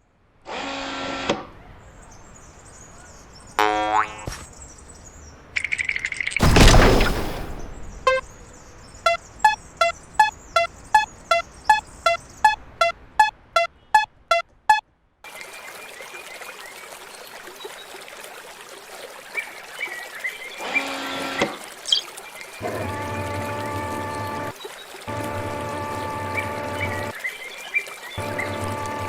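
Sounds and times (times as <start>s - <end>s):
water pouring and trickling: 2.6s - 10.4s, 15.2s - 29.0s
loud noisy burst: 6.4s - 8.1s
short beeping tones: 8.0s - 8.3s, 9.1s - 14.8s.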